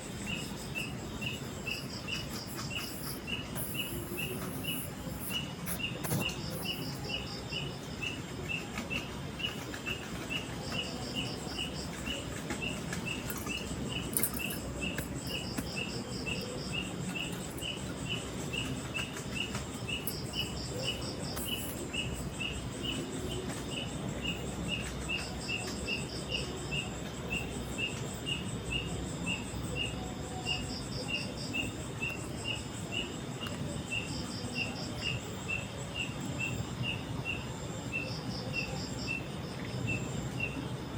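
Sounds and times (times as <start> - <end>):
insect pulsing trill: 0.0 - 23.4
insect steady high chirp: 0.0 - 40.9.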